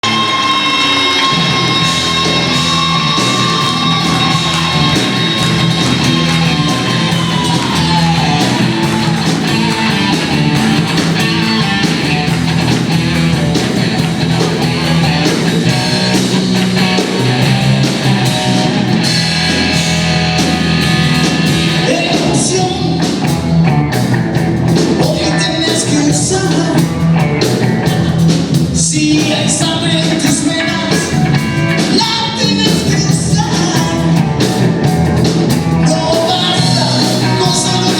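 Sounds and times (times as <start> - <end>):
person singing: 0.0 - 12.2, 21.8 - 23.2, 25.0 - 27.0, 27.8 - 34.4, 35.8 - 37.9
blues-rock band playing: 0.0 - 37.9.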